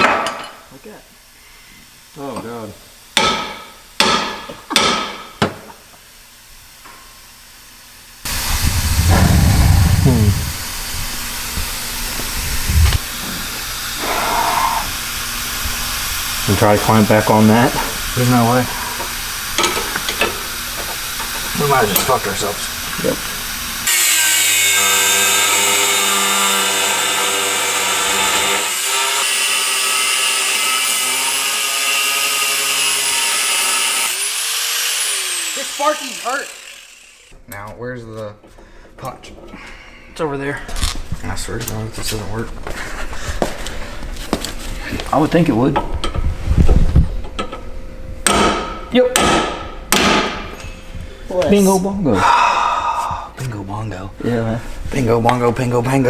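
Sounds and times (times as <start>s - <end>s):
hammer striking steel: 3.2s - 5.6s, 48.2s - 50.8s
loud hiss with low rumble: 8.2s - 13.8s
angle grinder cutting metal: 8.2s - 37.4s.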